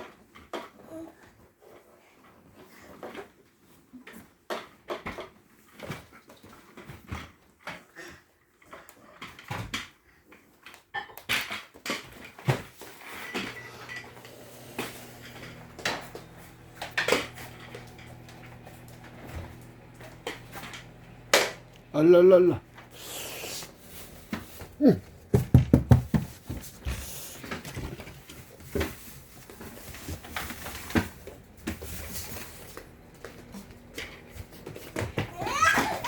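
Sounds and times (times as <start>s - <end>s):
low motor hum: 13.4s - 25.4s, 28.4s - 36.0s
hard objects knocking and clinking: 24.9s - 26.6s.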